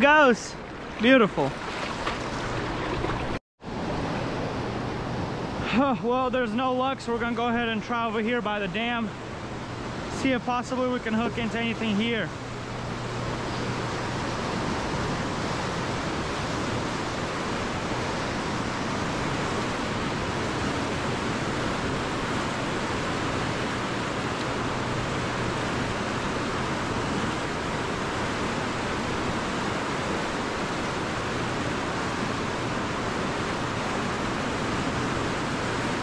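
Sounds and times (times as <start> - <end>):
river water rushing: 0.0 - 36.0.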